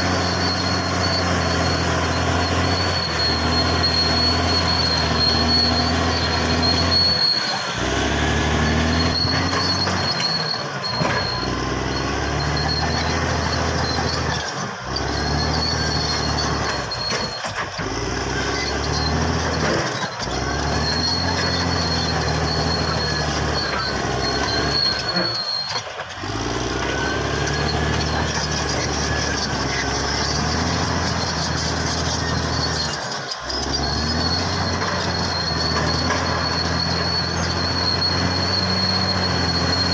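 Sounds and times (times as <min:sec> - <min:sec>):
bulldozer diesel engine running: 0:00.0 - 0:39.9
steel tracks squealing and clanking: 0:00.0 - 0:39.9.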